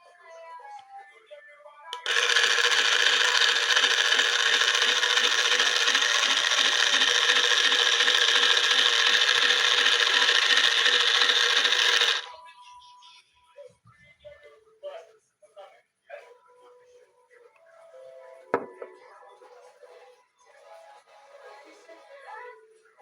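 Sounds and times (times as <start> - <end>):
toy washing machine running: 1.9 - 12.4.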